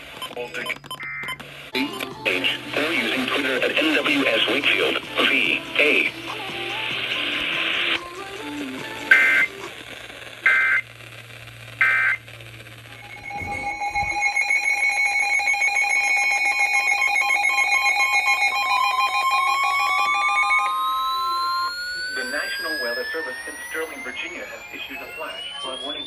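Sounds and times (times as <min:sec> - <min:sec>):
pulsing electronic alert tone: 0:13.1 - 0:14.3.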